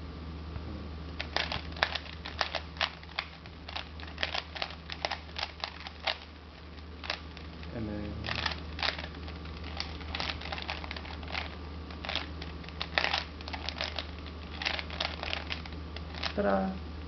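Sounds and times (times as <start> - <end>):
plastic puzzle cube clicking: 1.2 - 6.2, 8.3 - 9.1, 9.7 - 16.4.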